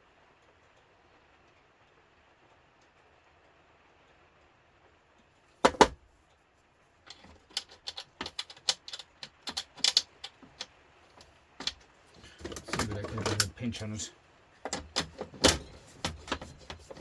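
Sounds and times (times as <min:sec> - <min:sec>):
hand tools clicking on casing: 0:07.1 - 0:13.6.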